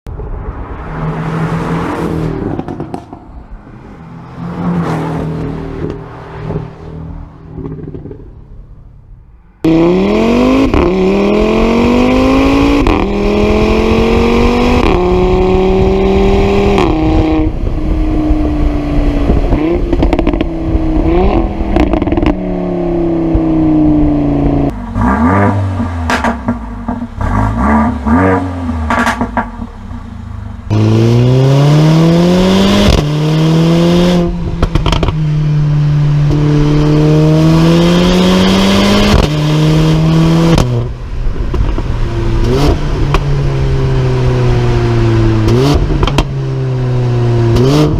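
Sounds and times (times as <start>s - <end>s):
car accelerating hard: 0.1s - 8.5s, 9.6s - 47.9s
exhaust crackles and pops: 2.5s - 3.4s, 7.4s - 8.6s, 28.9s - 30.5s, 34.5s - 35.2s, 40.5s - 43.3s, 45.4s - 46.4s
sports car engine revving: 9.6s - 47.9s.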